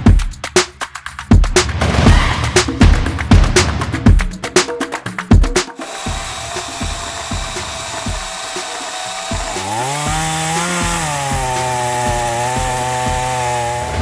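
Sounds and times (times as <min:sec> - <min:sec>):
music beat thudding: 0:00.0 - 0:14.0
chainsaw cutting wood: 0:05.8 - 0:14.0.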